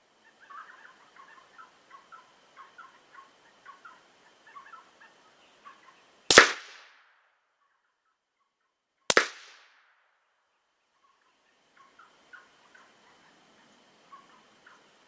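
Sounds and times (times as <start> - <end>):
rifle shot: 6.3 - 7.0, 9.1 - 9.8.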